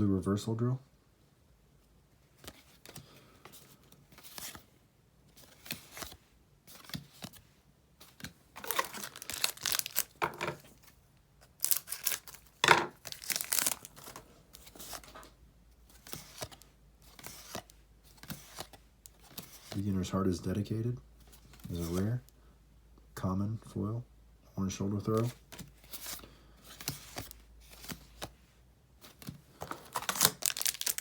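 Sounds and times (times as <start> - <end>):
wrapper tearing and crinkling: 8.6 - 10.4, 11.6 - 14.1, 29.6 - 31.0.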